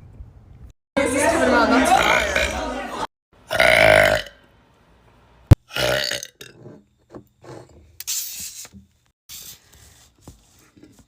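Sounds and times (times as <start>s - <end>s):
girl burping: 1.9s - 2.6s, 3.5s - 4.4s.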